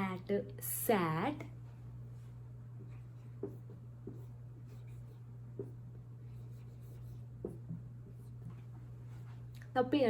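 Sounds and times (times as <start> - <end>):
low electrical hum: 0.0 - 10.0
pen scratching on paper: 2.8 - 8.4.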